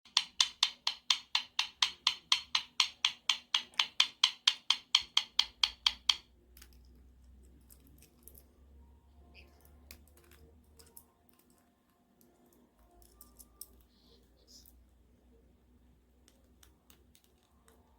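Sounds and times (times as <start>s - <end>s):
parrot making rapid clicks: 0.1s - 6.2s.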